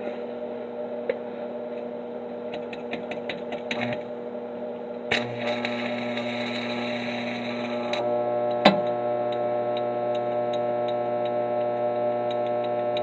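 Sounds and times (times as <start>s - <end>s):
electrical hum: 0.0s - 13.0s
welding arc crackling: 2.5s - 4.1s, 5.1s - 13.0s.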